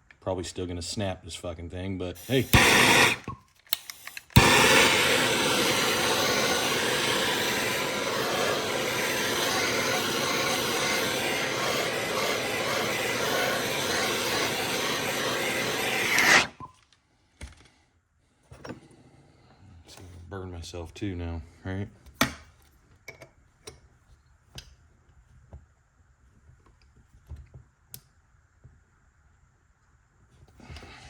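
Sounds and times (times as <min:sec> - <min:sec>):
heat tool rushing: 0:02.2 - 0:16.6.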